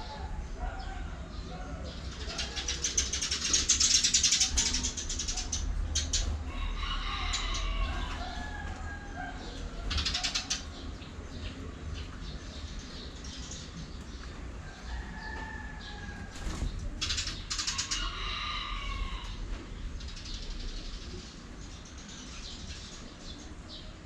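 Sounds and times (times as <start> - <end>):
cockatiels chirping and calling: 2.2 - 10.8.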